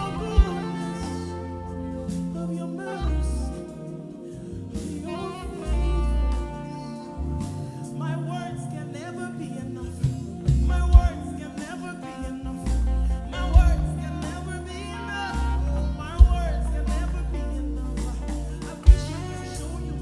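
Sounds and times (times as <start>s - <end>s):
deep bass notes: 0.0s - 2.3s, 9.9s - 11.6s, 12.4s - 20.0s
gospel singing over a band: 0.0s - 20.0s.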